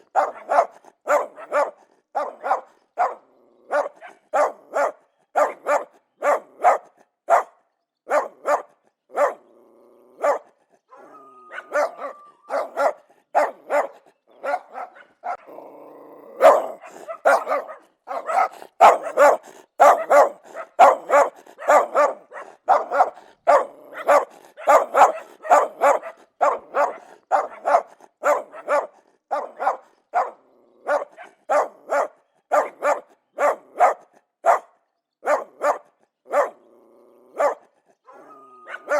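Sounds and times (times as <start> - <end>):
dogs barking aggressively: 0.0 - 38.9
low growling: 9.5 - 10.2, 15.3 - 17.2, 36.6 - 37.4.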